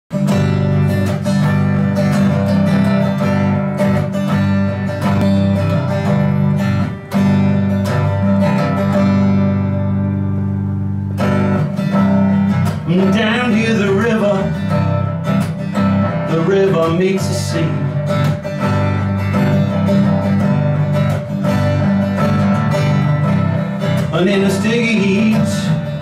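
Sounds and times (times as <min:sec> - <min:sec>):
acoustic guitar strumming chords: 0:00.1 - 0:26.0
person singing: 0:12.8 - 0:14.8, 0:16.2 - 0:18.1, 0:24.0 - 0:26.0.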